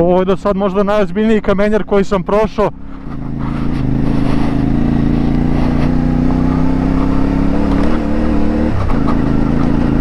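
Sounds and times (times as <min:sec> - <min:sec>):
motorcycle engine running under load: 0:02.0 - 0:10.0.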